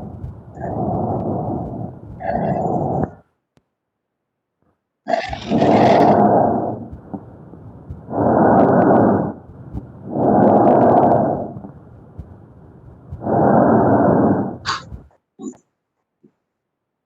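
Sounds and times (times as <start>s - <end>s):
noisy breath sounds: 0.0s - 3.4s, 5.3s - 15.2s.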